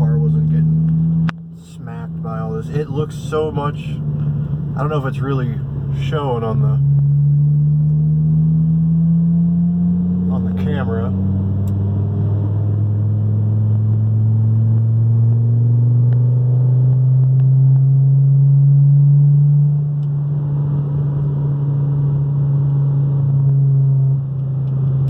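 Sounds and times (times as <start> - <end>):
car engine heard from inside: 0.0 - 25.0.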